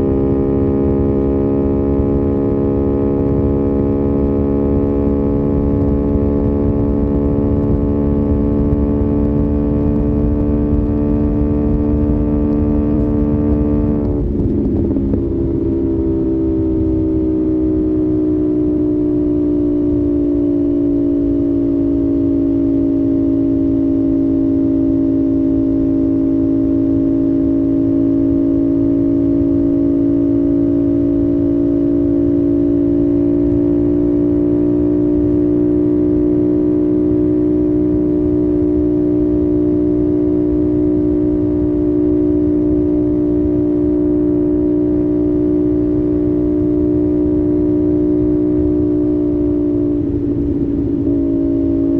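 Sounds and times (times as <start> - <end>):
motorcycle engine cruising: 0.0 - 51.9.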